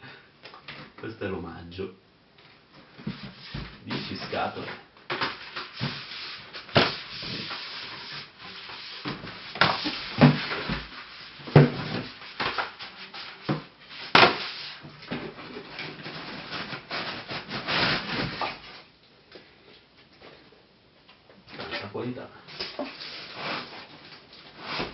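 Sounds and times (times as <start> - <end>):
packaging rustling and scraping: 3.0 - 18.9, 22.6 - 24.9.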